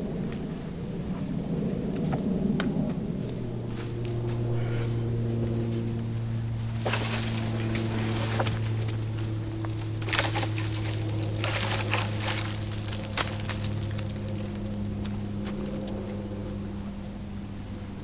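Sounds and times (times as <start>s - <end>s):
low engine drone: 0.0s - 18.0s
dry branches and leaves rustling: 0.2s - 18.0s.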